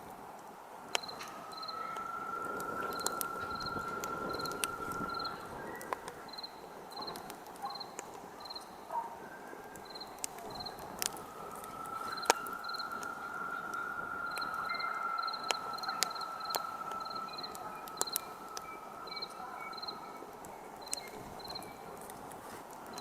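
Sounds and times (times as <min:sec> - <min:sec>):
campfire crackling and popping: 0:00.0 - 0:23.0
crickets chirping: 0:00.9 - 0:22.1
steady high-pitched tone: 0:10.0 - 0:21.9.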